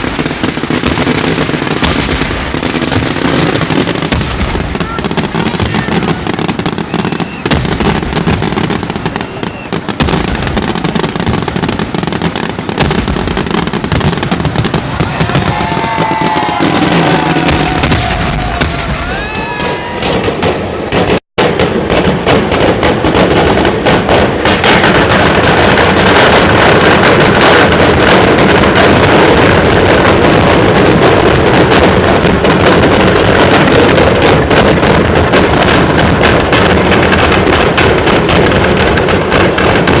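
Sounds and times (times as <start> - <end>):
firework whistles: 0.0 - 21.2
firecrackers crackling: 0.0 - 40.0.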